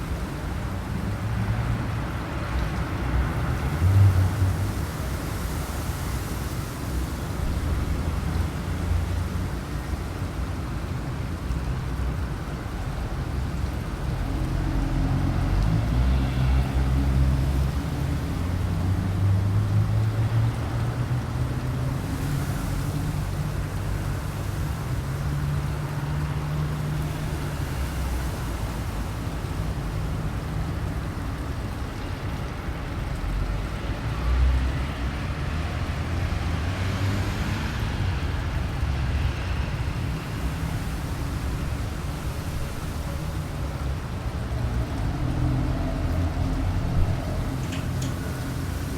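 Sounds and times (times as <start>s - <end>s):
gusty wind buffeting microphone: 37.7s - 48.9s.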